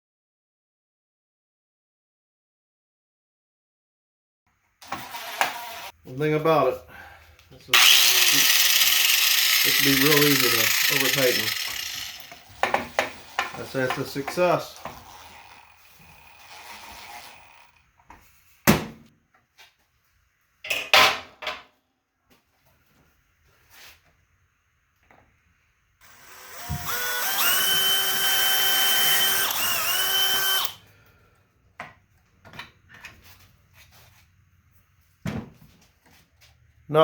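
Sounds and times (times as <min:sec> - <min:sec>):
power drill driving screw: 0:04.8 - 0:05.9, 0:07.8 - 0:17.8, 0:26.0 - 0:30.8.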